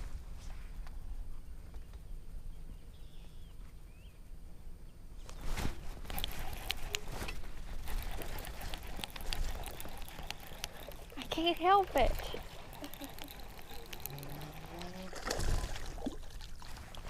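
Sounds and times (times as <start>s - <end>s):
faint bird chirp: 1.4s - 5.6s.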